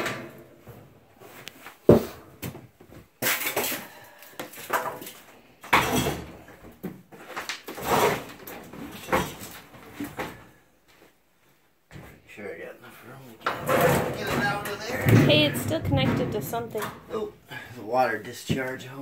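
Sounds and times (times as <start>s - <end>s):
washing machine scraping on floor: 7.7s - 8.5s, 13.5s - 17.0s.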